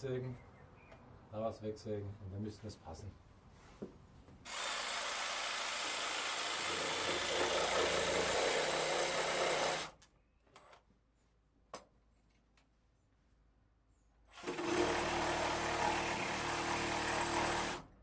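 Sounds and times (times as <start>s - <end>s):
electric saw cutting wood: 4.5s - 10.0s, 14.4s - 17.9s.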